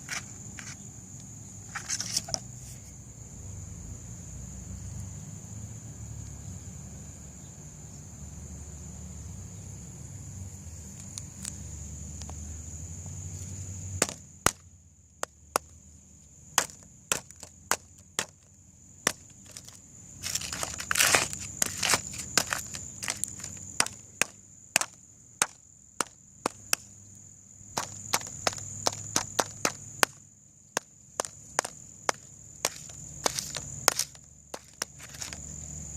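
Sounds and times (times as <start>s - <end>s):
sharp cracks and knocks: 14.0s - 15.8s, 16.5s - 27.0s, 27.8s - 35.6s
crunching: 16.5s - 27.0s, 27.7s - 35.9s.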